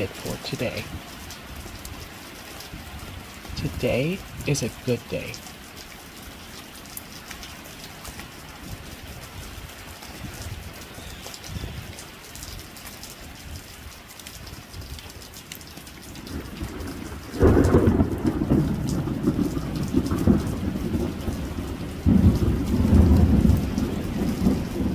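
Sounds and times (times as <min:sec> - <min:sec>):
steady rain falling: 0:00.0 - 0:24.9
thunder rumbling: 0:16.2 - 0:24.9.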